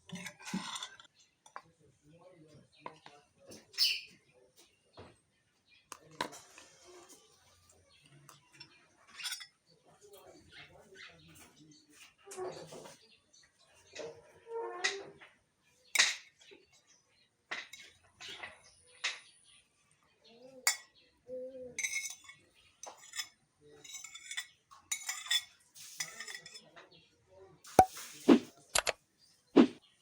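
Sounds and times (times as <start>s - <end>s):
utensils and dishes clinking: 0.0s - 1.1s, 9.0s - 9.6s, 21.8s - 26.7s.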